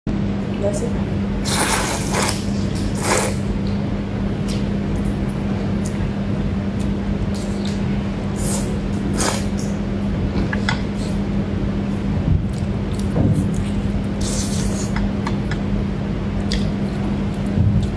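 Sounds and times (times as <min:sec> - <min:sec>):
person eating with smacks and slurps: 0:01.4 - 0:03.5, 0:06.8 - 0:09.7, 0:12.5 - 0:15.6, 0:16.4 - 0:17.9.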